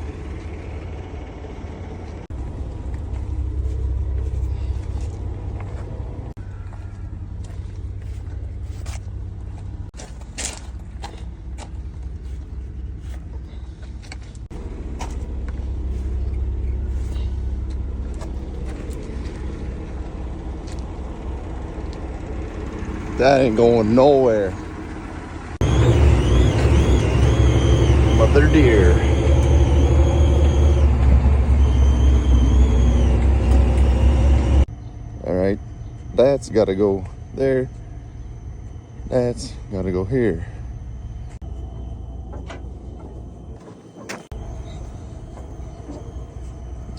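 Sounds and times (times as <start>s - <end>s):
vehicle engine running: 0.0s - 46.9s
faint high steady whine: 34.3s - 46.9s.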